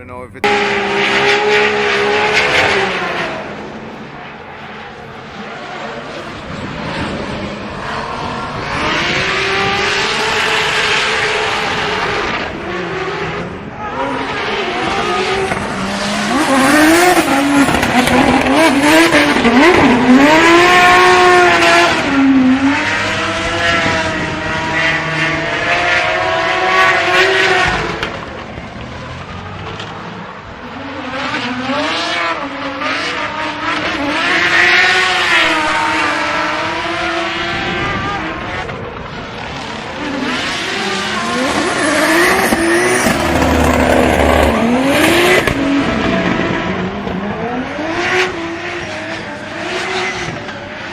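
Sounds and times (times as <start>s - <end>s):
car engines revving hard: 0.4s - 50.9s.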